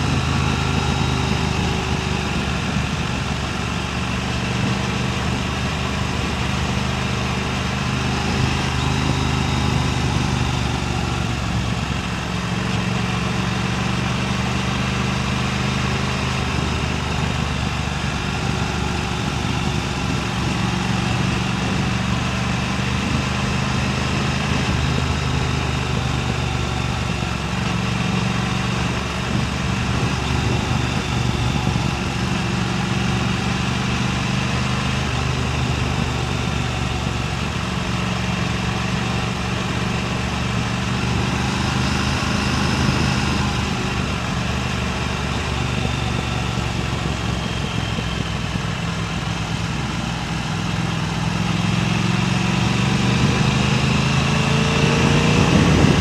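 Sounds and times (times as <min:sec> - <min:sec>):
motorcycle engine running: 0:00.0 - 0:56.0
wind noise on microphone: 0:16.4 - 0:33.6, 0:38.7 - 0:51.0, 0:52.2 - 0:56.0.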